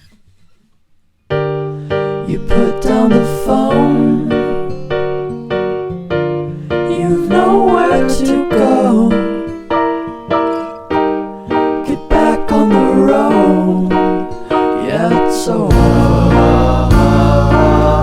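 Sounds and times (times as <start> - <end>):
keyboard chords: 1.3 - 18.0
person singing: 2.2 - 4.9, 6.8 - 9.7, 11.8 - 18.0.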